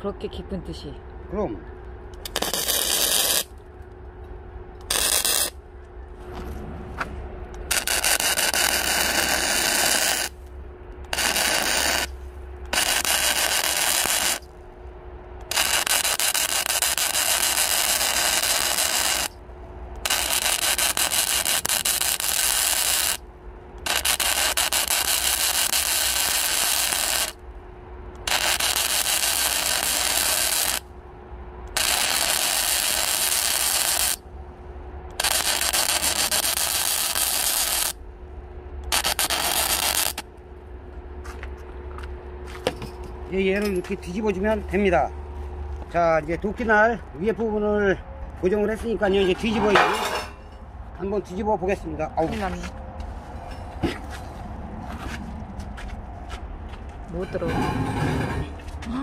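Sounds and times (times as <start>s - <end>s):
welding arc crackling: 2.2s - 3.7s, 4.8s - 5.6s, 7.5s - 14.6s, 15.4s - 27.4s, 28.2s - 30.9s, 31.7s - 34.2s, 35.1s - 38.0s, 38.8s - 40.3s.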